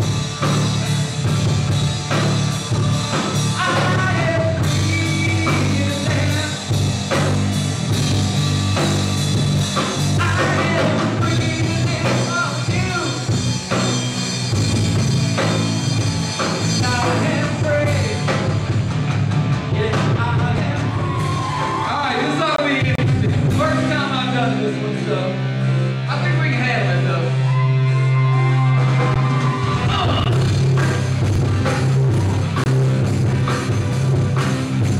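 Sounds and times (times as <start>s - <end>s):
live rock band: 0.0s - 34.9s
person singing: 3.5s - 6.8s, 10.1s - 13.3s, 16.6s - 18.4s.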